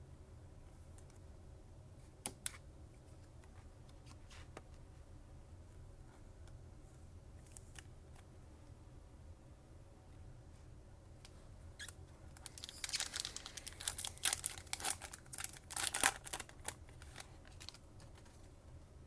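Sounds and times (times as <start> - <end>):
foil wrapper tearing and crinkling: 12.4 - 18.2.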